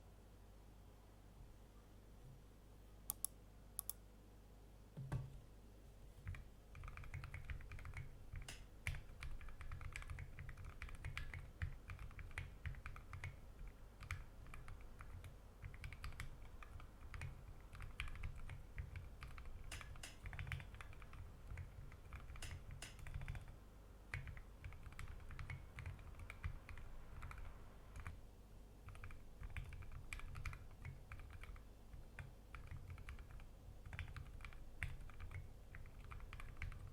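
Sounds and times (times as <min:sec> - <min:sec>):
thump: 0:05.0 - 0:05.4
mechanical keyboard typing: 0:06.2 - 0:23.5, 0:24.1 - 0:28.2, 0:28.9 - 0:36.9.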